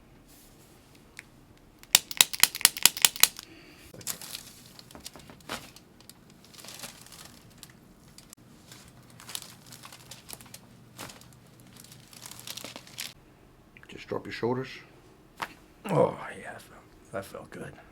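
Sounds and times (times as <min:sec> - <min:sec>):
faint clicks and crinkling: 0:00.9 - 0:13.2
sharp joint cracks: 0:01.8 - 0:03.4.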